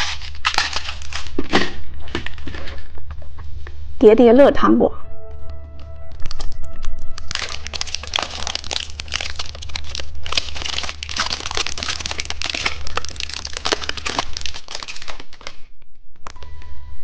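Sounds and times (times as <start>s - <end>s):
plastic packaging crinkling: 0.0s - 2.9s, 6.2s - 15.8s.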